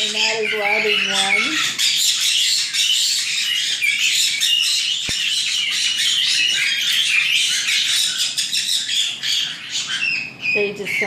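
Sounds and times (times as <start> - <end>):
flock of parrots chattering: 0.0 - 11.0.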